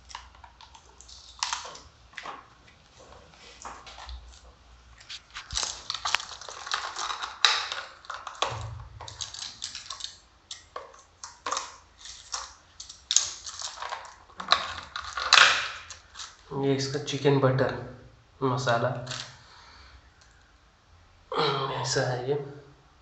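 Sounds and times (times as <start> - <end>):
food packaging crinkling: 0.0 - 16.5.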